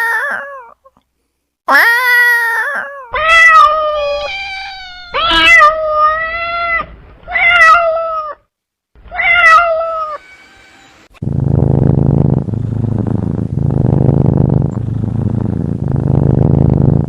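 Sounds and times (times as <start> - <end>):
cat meowing: 1.8 - 8.4, 9.1 - 10.2
low steady rumble: 3.2 - 8.3, 11.2 - 17.0.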